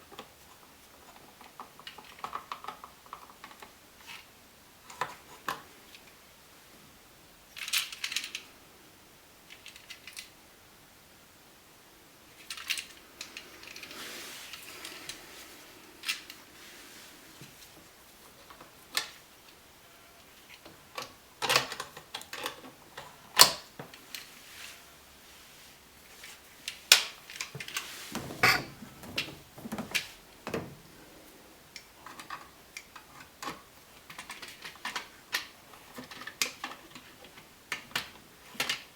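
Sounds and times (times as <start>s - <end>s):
tools clicking and clinking: 27.6s - 30.7s.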